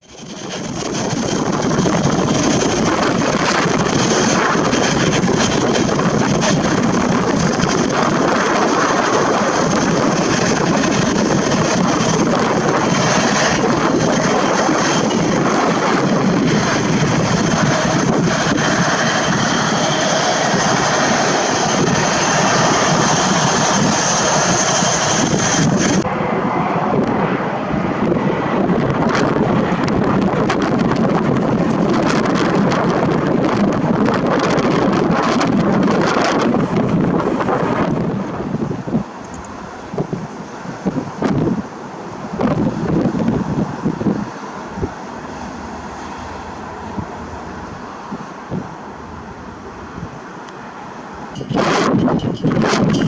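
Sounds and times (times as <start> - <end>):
high whine: 0.0 - 39.5, 51.3 - 53.0
airliner engines running: 0.0 - 53.0.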